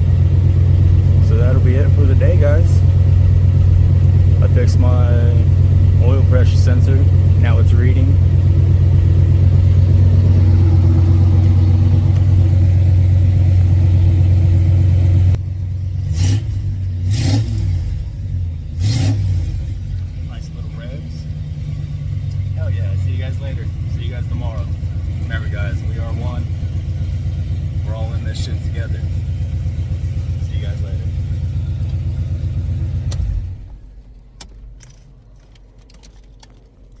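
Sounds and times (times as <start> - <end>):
engine throttle revs: 0.0 - 33.8
car engine idling: 0.0 - 37.0
ignition click: 33.0 - 36.7.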